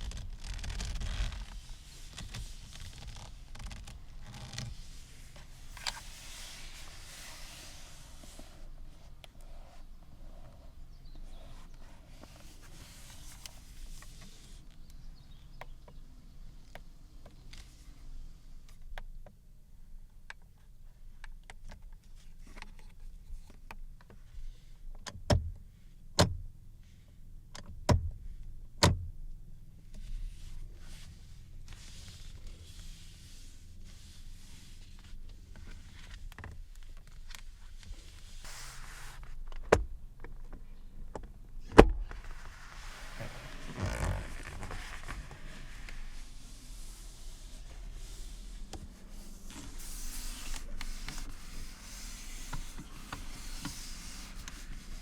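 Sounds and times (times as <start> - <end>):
rubbing or scraping: 0.0 - 8.6, 38.2 - 39.3, 42.0 - 55.0
low steady hum: 23.8 - 55.0.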